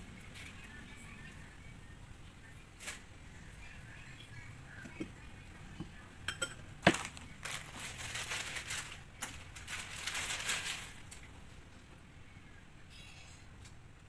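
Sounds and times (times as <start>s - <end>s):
kitchen clinks and knocks: 6.2s - 8.0s
crinkling and rustling: 6.8s - 12.0s.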